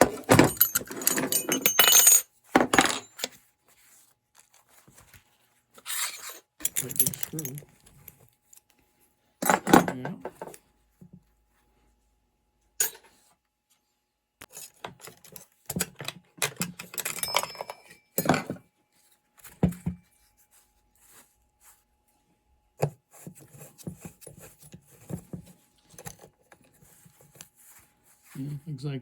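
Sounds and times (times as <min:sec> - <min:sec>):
metal parts and tools clinking: 0:00.0 - 0:03.3, 0:05.9 - 0:08.2, 0:09.4 - 0:10.6, 0:14.5 - 0:18.6.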